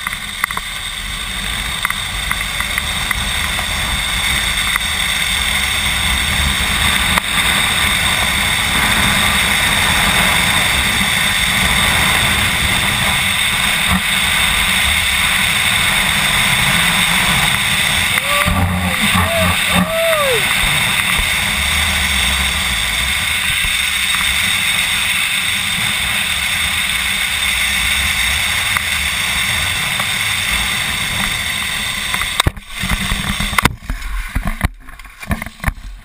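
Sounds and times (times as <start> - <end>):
zip line trolley whine: 0.0 - 34.5
wind rushing over microphone: 0.0 - 36.0.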